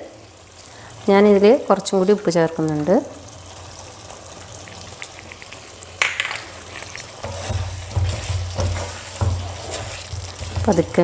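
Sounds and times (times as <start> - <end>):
curry sizzling in a pan: 0.0 - 11.0
spoon scraping and sloshing: 4.6 - 11.0.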